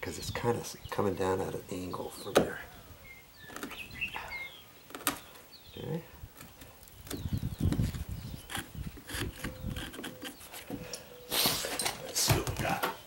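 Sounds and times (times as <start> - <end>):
wood chisel paring wood: 3.5 - 3.8, 6.3 - 10.8.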